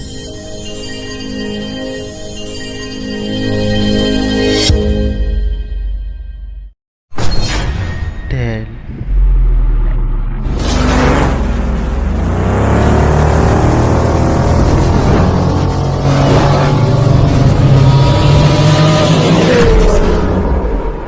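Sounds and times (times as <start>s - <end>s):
car engine revving: 8.9s - 20.8s.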